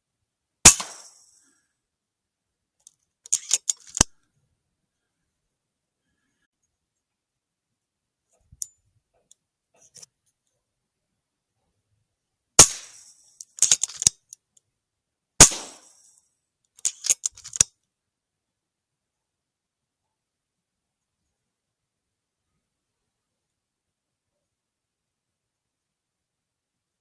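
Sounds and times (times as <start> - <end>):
air rifle shots: 0.6 - 1.2, 12.6 - 14.0, 15.4 - 15.9
metallic clicks of rifle action: 2.8 - 4.2, 12.6 - 14.7, 16.7 - 17.8.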